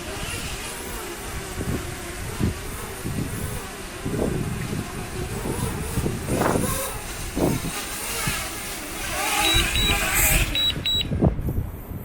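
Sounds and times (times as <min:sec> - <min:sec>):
wind buffeting microphone: 0:00.0 - 0:12.0
short high electronic beeps: 0:09.4 - 0:11.1.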